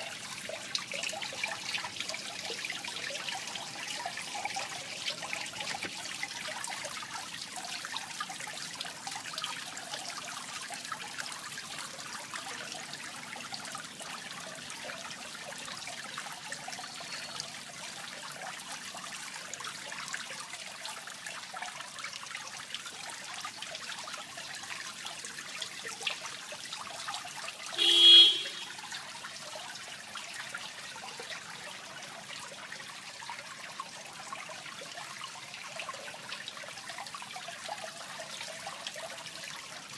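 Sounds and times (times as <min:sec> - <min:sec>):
water trickling into pond: 0:00.0 - 0:39.9
horn honk: 0:27.8 - 0:28.8.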